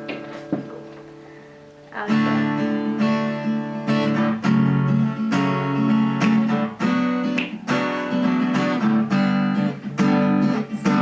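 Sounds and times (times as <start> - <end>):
acoustic guitar strumming: 0.0 - 11.0.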